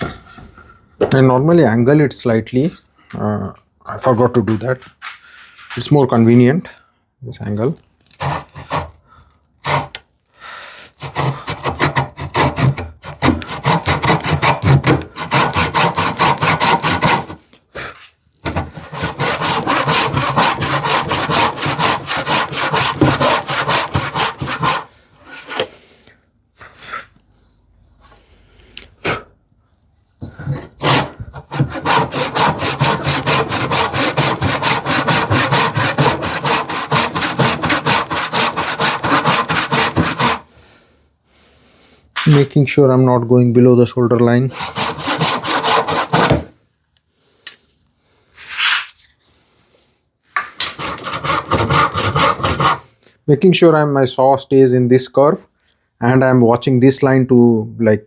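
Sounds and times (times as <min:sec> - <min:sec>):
hand saw cutting wood: 0:08.2 - 0:09.0, 0:09.6 - 0:10.0, 0:10.9 - 0:17.5, 0:18.4 - 0:25.7, 0:30.5 - 0:40.5, 0:44.5 - 0:46.6, 0:50.5 - 0:52.9.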